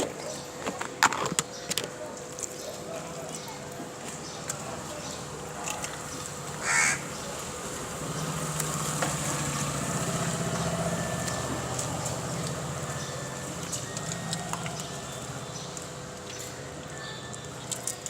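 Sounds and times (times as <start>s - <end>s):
low engine hum: 4.4s - 17.7s.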